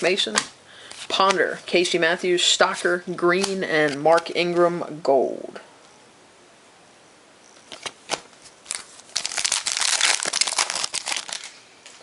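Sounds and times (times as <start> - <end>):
foil wrapper tearing and crinkling: 8.1 - 12.0.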